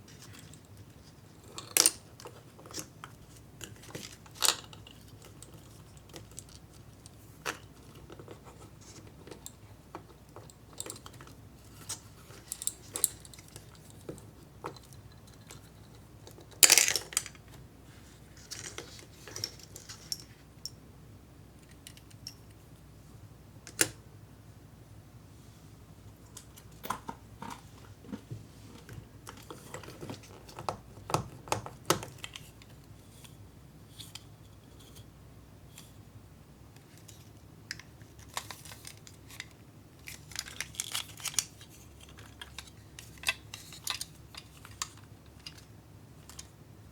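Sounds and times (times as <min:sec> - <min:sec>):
plastic parts and candies clicking: 0:00.2 - 0:17.4, 0:36.8 - 0:46.5.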